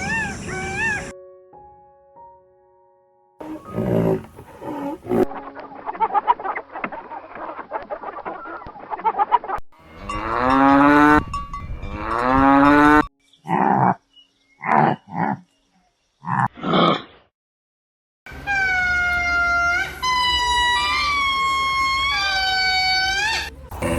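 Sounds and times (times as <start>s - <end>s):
cattle mooing: 3.4s - 5.3s.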